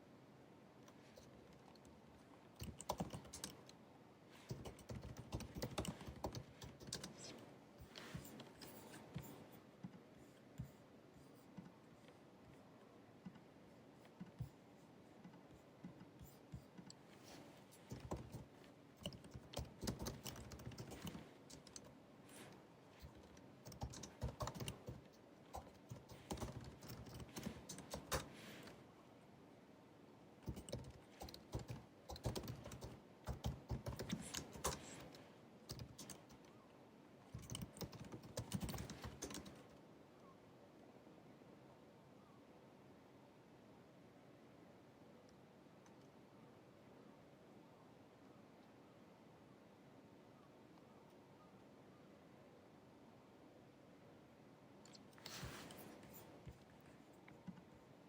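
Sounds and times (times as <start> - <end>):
laptop keyboard typing clicks: 2.6 - 3.8, 4.5 - 7.3, 17.9 - 21.9, 23.0 - 28.3, 30.4 - 36.4, 37.3 - 39.6.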